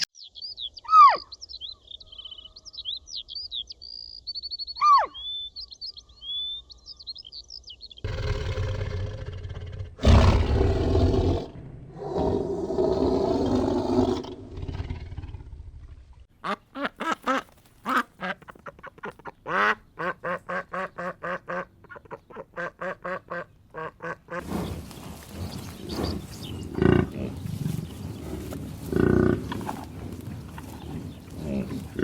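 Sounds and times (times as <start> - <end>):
duck quacking: 16.4 - 24.5
animal calls: 16.4 - 32.0.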